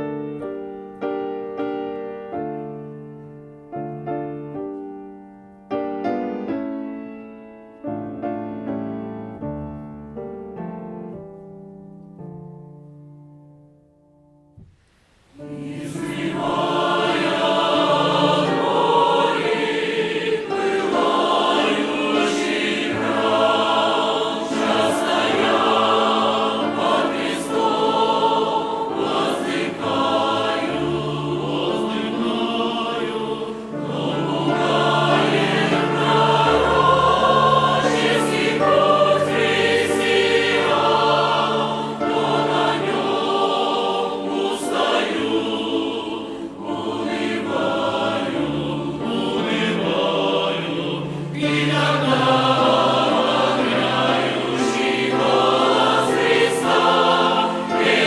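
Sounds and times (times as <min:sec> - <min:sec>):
choir singing with accompaniment: 0:14.6 - 0:58.0.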